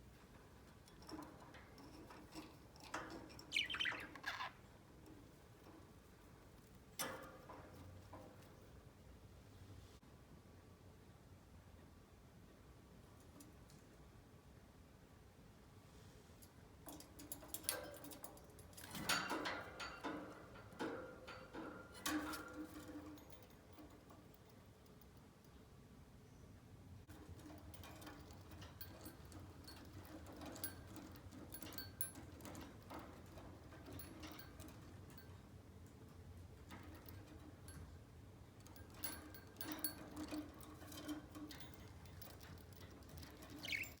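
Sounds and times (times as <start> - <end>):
budgerigar clicking and chirping: 3.5 - 4.6.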